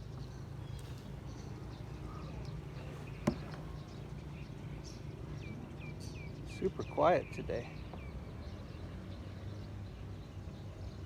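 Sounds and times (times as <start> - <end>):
faint bird chirps: 0.0 - 11.0.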